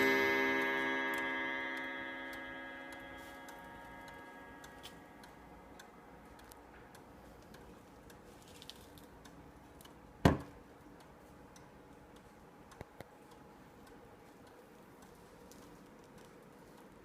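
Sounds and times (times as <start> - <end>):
clock ticking: 0.0 - 8.3, 9.1 - 17.0.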